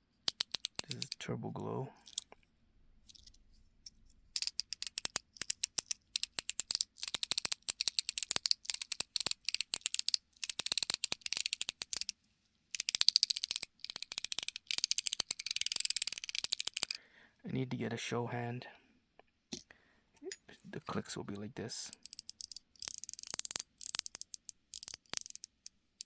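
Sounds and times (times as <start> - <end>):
metal fidget toy clicking: 0.2 - 1.2, 2.0 - 2.3, 4.3 - 17.0, 21.9 - 26.0.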